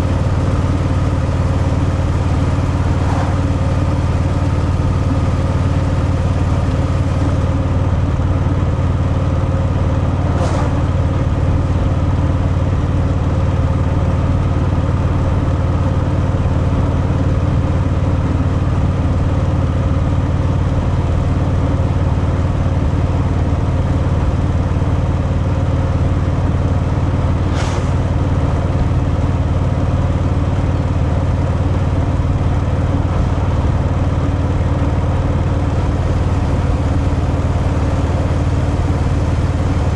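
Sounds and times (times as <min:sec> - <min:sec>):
motorcycle engine cruising: 0:00.0 - 0:06.5, 0:09.1 - 0:12.4
brief sharp sounds: 0:10.1 - 0:10.9.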